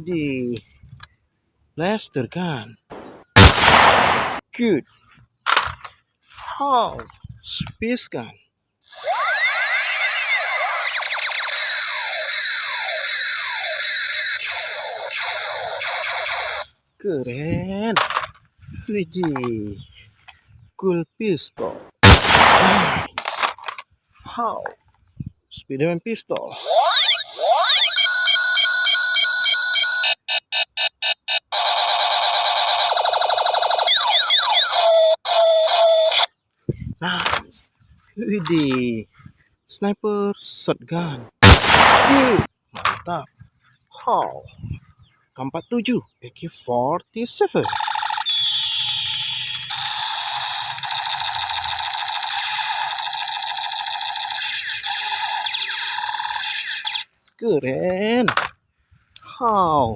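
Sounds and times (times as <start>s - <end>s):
warbling electronic buzz: 9.0s - 16.7s
toy pistol beeping tones: 10.7s - 16.6s, 26.6s - 36.3s, 47.6s - 57.0s.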